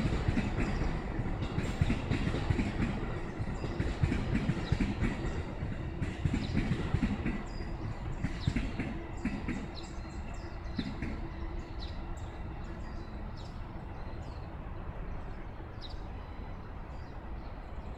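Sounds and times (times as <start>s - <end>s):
train wheels clacking over rail joints: 0.0s - 12.0s
small birds chirping: 0.0s - 14.6s
low train hum: 0.0s - 17.9s.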